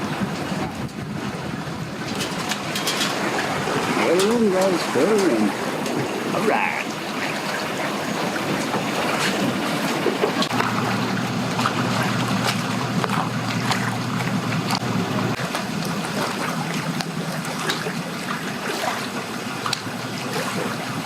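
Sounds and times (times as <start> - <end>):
wind noise on microphone: 0.0 - 6.4
choppy water: 0.0 - 21.0
engine running low: 0.0 - 21.0.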